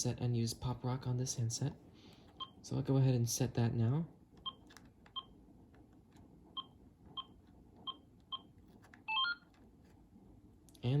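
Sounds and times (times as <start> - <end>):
phone keypad beeps: 9.1 - 9.5.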